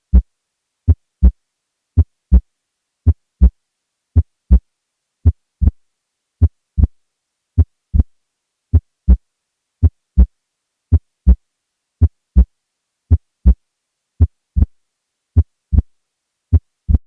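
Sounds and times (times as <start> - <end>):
heartbeat thuds: 2.0 - 2.4, 3.1 - 3.6, 4.2 - 4.6, 6.4 - 7.0, 7.6 - 8.1, 8.7 - 9.2, 9.8 - 10.3, 10.9 - 11.4, 12.0 - 12.5, 14.2 - 14.8, 15.4 - 15.9, 16.5 - 17.0.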